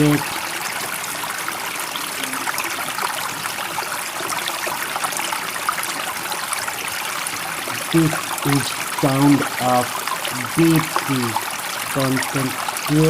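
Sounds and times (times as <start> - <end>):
running water: 0.0 - 13.0
water drips and splashes: 0.0 - 13.0.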